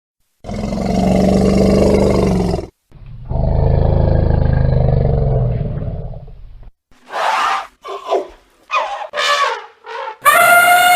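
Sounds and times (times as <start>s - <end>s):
elephant calling: 7.1s - 10.9s.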